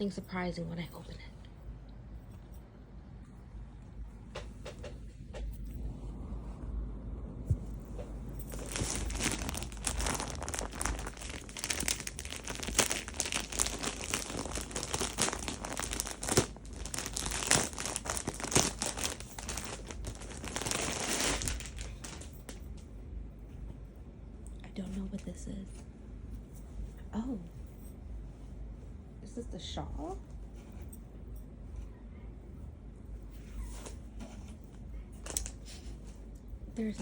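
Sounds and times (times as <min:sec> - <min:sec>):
packaging crinkling: 0:08.3 - 0:22.6, 0:35.2 - 0:35.8.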